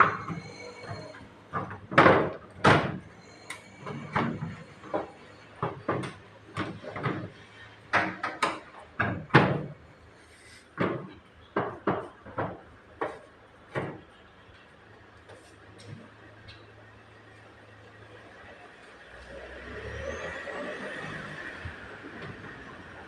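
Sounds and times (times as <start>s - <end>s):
irregular knocks and clunks: 0.0s - 9.8s, 10.7s - 14.2s.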